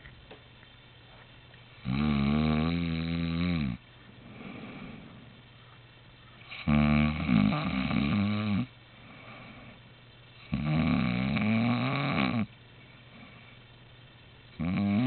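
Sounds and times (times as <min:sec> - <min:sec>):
man snoring: 0:01.8 - 0:03.8, 0:06.5 - 0:08.7, 0:10.5 - 0:12.5, 0:14.6 - 0:15.0
quiet breathing: 0:03.7 - 0:06.8, 0:08.6 - 0:10.6, 0:12.4 - 0:14.4.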